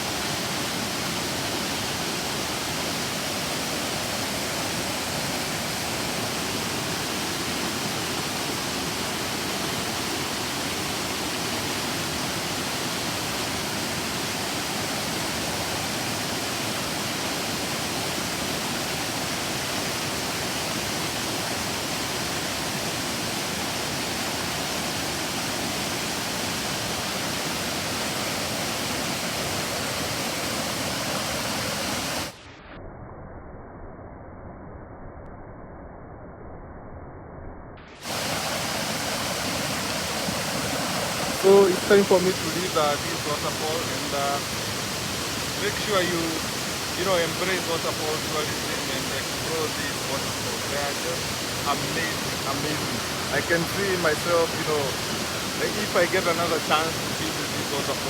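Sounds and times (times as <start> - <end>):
waterfall pouring: 38.0 - 58.0.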